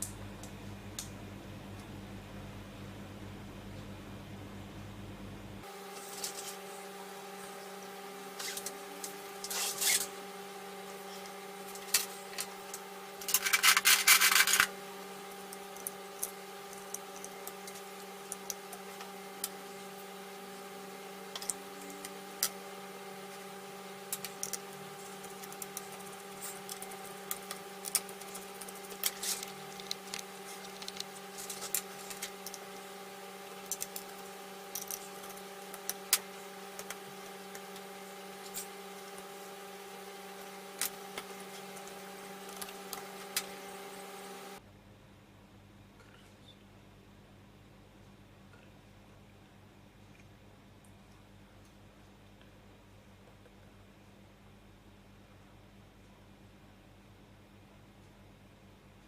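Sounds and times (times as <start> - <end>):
steady electrical hum: 0.0 - 59.0
rubbing sound: 9.4 - 10.1.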